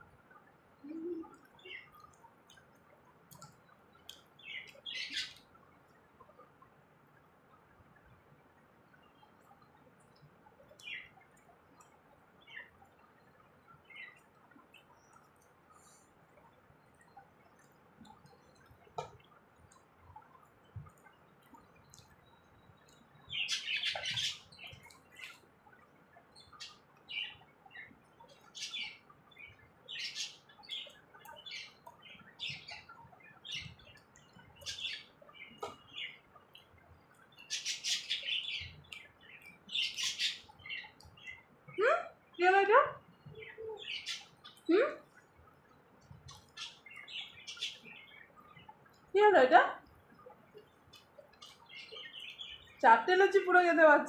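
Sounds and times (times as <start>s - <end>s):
small birds chirping: 0.0s - 54.0s
faint clicks: 0.2s - 6.7s, 8.9s - 28.8s, 30.2s - 41.4s.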